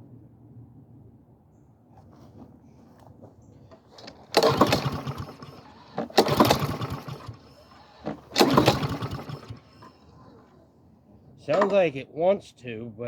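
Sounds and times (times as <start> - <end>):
lawn mower engine cranking: 3.0 - 10.6, 11.4 - 12.0.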